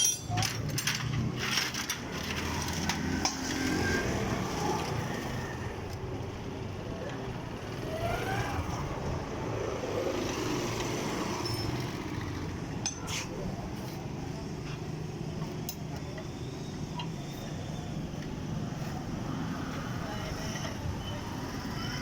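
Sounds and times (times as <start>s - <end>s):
street traffic: 0.0s - 22.0s
faint voices: 12.4s - 22.0s.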